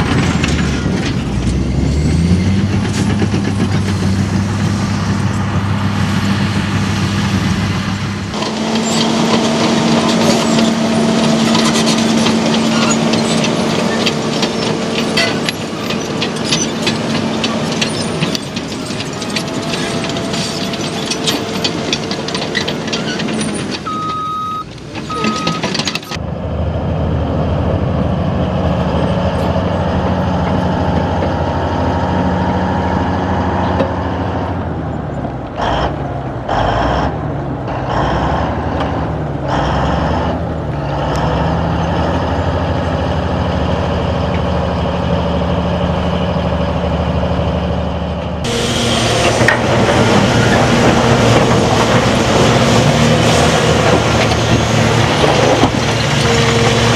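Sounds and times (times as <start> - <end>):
bulldozer clanking: 0.0 - 56.9
bulldozer diesel engine running: 0.0 - 56.9
reversing beeps: 23.8 - 26.2.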